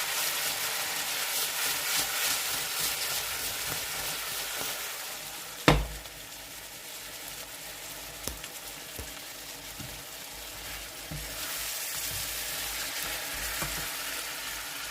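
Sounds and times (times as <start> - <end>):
food sizzling in a pan: 0.0 - 14.9.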